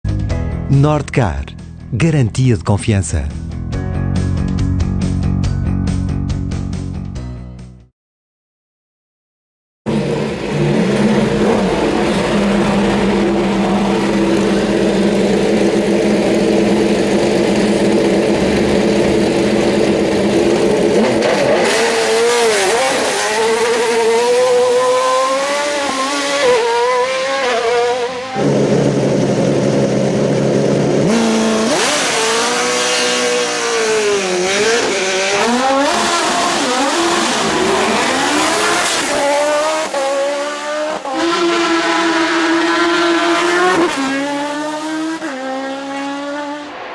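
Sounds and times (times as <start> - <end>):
racing car engine revving: 9.9 - 46.9.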